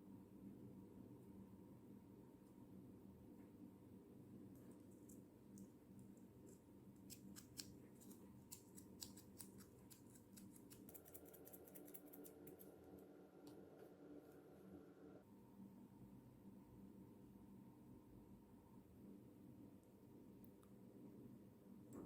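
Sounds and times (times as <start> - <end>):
low steady hum: 0.0 - 22.0
sharp clicks and snips: 6.4 - 12.7.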